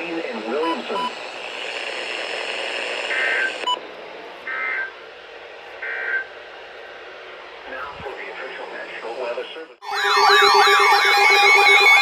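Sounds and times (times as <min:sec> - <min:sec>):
radio hiss: 0:00.0 - 0:06.6, 0:07.2 - 0:09.8
buzzy digital data tones: 0:01.8 - 0:03.8, 0:09.8 - 0:12.0.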